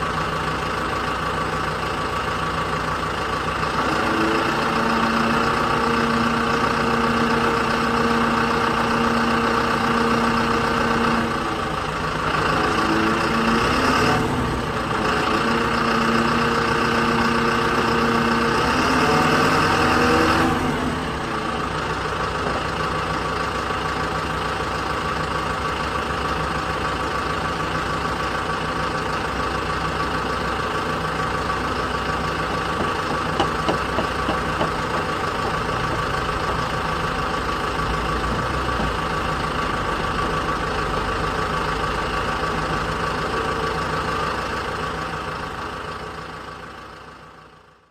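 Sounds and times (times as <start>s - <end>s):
diesel engine working: 0.0s - 47.9s.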